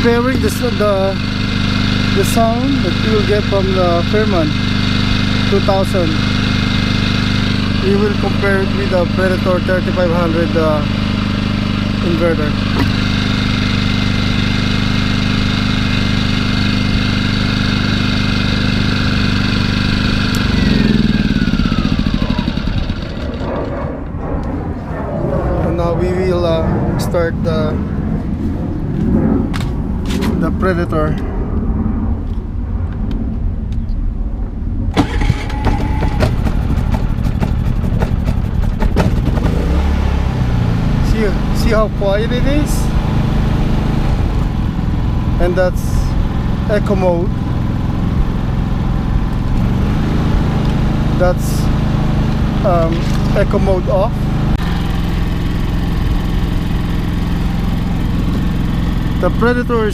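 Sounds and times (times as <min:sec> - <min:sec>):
generator running: 0:00.0 - 0:24.4, 0:25.7 - 0:31.2, 0:34.9 - 0:59.9
low rumble: 0:20.1 - 0:59.9.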